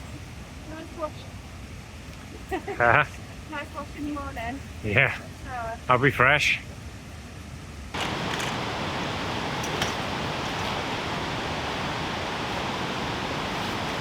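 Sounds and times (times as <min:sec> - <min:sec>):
flowing water rushing: 0:08.0 - 0:14.0.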